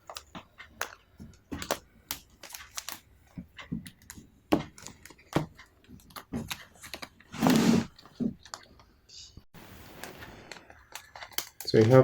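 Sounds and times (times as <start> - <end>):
plastic packaging clicks and taps: 0.0 - 7.2, 10.0 - 12.0.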